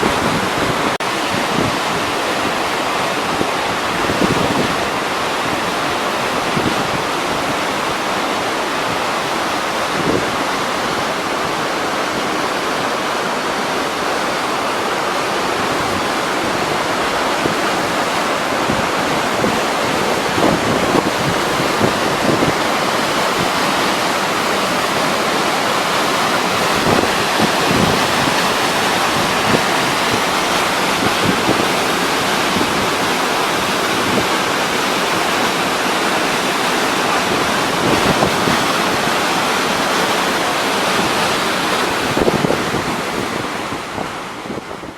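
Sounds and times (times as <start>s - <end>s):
waterfall rushing: 0.0s - 44.9s
wind gusts on microphone: 0.0s - 44.9s.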